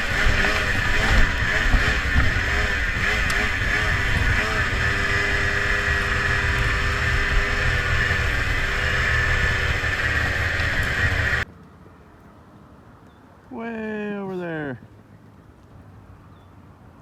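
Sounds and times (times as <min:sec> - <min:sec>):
two-stroke engine at high revs: 0:00.0 - 0:11.4
wind on microphone: 0:00.0 - 0:11.4.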